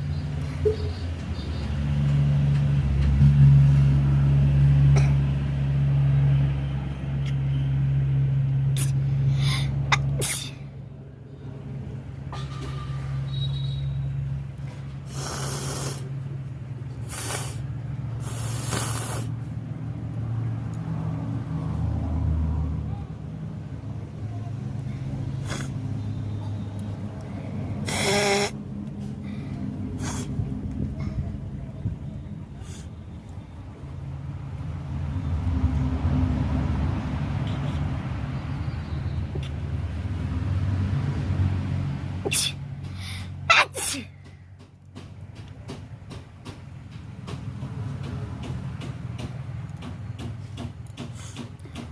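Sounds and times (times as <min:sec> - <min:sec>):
vehicle engine humming: 0:00.0 - 0:51.9
noisy breaths through congested nose: 0:15.0 - 0:16.2, 0:17.0 - 0:19.5, 0:27.3 - 0:31.3, 0:32.6 - 0:33.0, 0:42.3 - 0:43.4.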